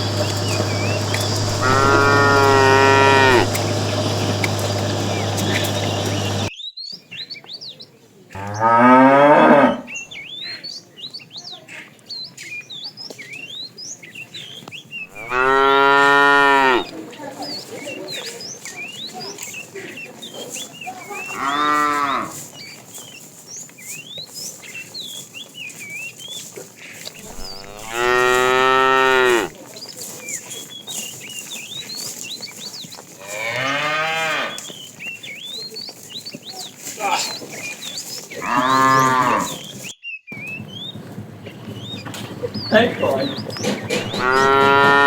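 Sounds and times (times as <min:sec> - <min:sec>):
cattle mooing: 0:00.0 - 0:06.5, 0:08.4 - 0:10.0, 0:15.1 - 0:16.9, 0:21.3 - 0:22.4, 0:27.2 - 0:29.5, 0:33.2 - 0:34.6, 0:38.3 - 0:39.8, 0:44.0 - 0:45.0.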